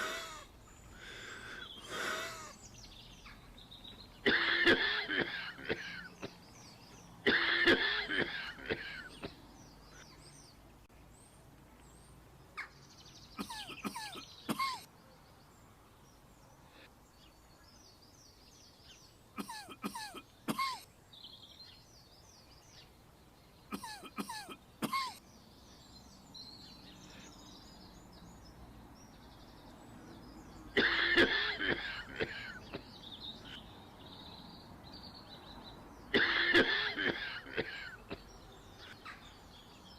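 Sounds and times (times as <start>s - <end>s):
faint bird chirps: 0.0s - 39.9s
outdoor background noise: 0.0s - 39.9s
person coughing: 4.2s - 6.1s, 7.3s - 9.2s, 13.4s - 14.9s, 19.4s - 20.9s, 23.7s - 25.2s, 30.8s - 32.6s, 36.1s - 38.1s.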